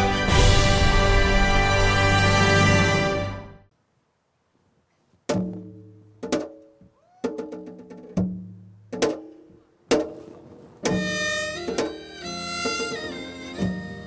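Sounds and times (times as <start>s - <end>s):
sustained chord: 0.0s - 3.7s.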